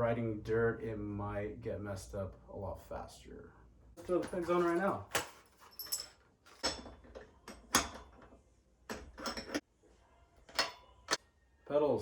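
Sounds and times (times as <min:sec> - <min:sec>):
metal pegs knocking and scraping: 0:04.0 - 0:09.6.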